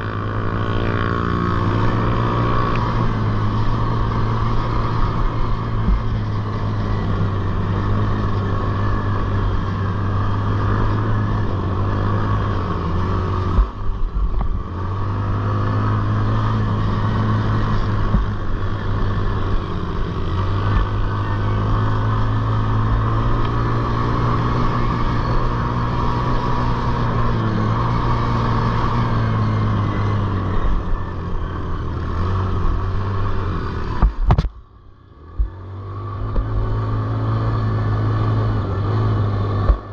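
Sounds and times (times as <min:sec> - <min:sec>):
atv engine revving high: 0:00.0 - 0:34.2, 0:35.0 - 0:39.9.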